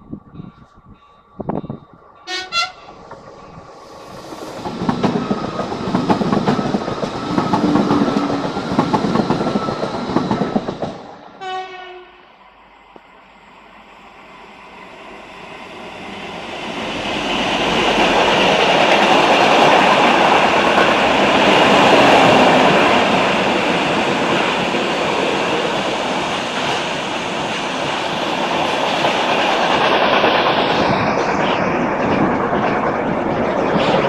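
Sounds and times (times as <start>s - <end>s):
train wheels rumbling on rails: 0.0s - 12.1s, 14.2s - 34.0s.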